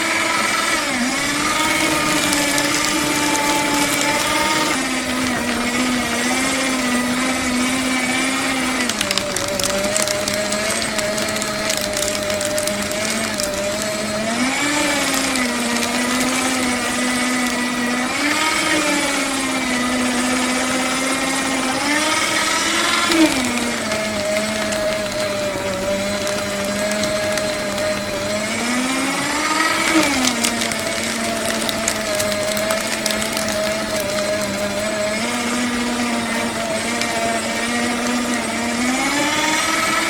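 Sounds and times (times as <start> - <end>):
paper shredder motor hum: 0.0 - 40.0
paper being cut crackle: 0.9 - 40.0.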